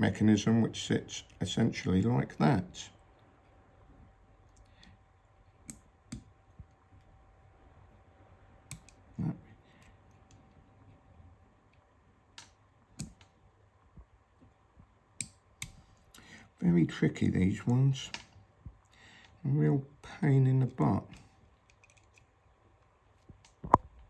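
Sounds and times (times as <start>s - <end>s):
rifle parts clicking: 21.6s - 22.3s.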